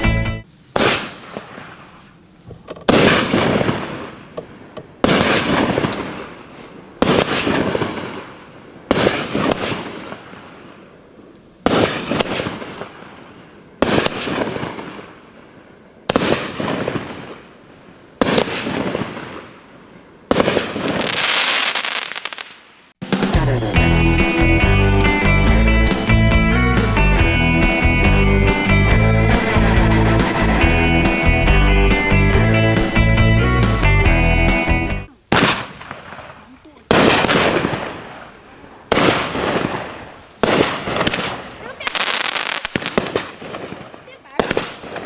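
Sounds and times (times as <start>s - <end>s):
firework shots: 0.7s - 2.2s, 2.8s - 10.9s, 11.6s - 15.4s, 16.0s - 17.6s, 18.2s - 23.2s, 35.3s - 45.0s.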